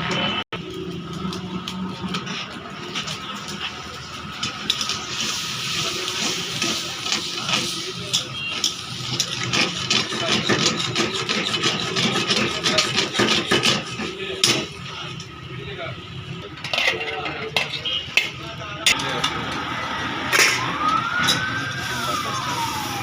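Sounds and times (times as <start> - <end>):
utensil scraping cookware: 2.0 - 14.9.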